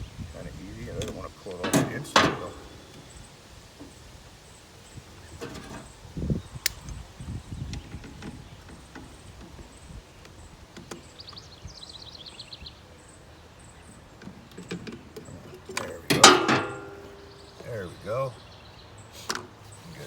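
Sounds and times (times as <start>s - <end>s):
hand tools clicking and knocking: 1.0s - 3.9s, 5.4s - 5.9s, 14.2s - 17.6s
tools clattering: 1.0s - 4.0s, 5.4s - 5.9s, 14.6s - 17.6s.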